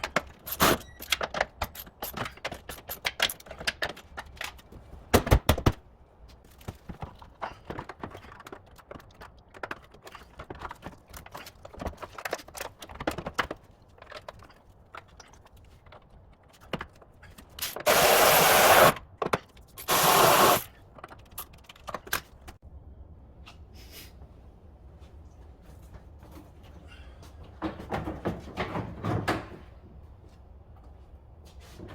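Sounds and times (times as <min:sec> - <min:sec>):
hand tools and metal parts clinking: 0:00.0 - 0:05.0, 0:06.2 - 0:22.6
loud hissing bursts: 0:17.9 - 0:19.0, 0:19.9 - 0:20.6.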